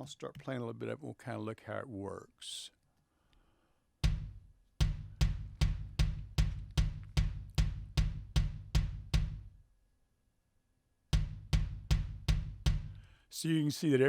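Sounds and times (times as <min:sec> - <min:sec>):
kick drum hits: 0:04.0 - 0:09.6, 0:11.2 - 0:13.1.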